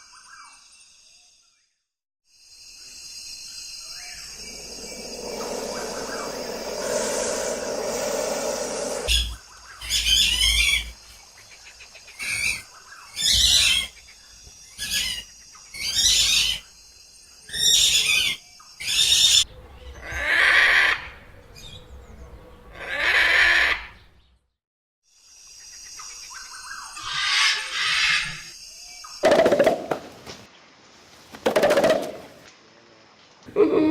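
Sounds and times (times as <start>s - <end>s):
steady hiss: 3.5s - 9.3s
birds calling: 4.0s - 10.9s.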